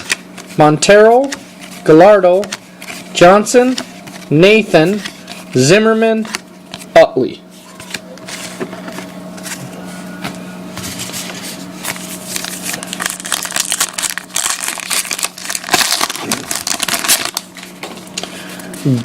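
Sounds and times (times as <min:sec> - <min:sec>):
wrapper tearing and crinkling: 0:11.9 - 0:18.3.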